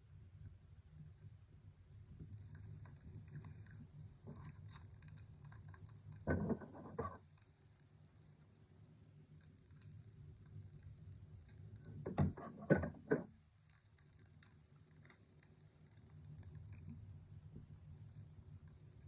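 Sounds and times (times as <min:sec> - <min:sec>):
cards ticking and rustling: 0:02.4 - 0:07.5, 0:13.6 - 0:17.0.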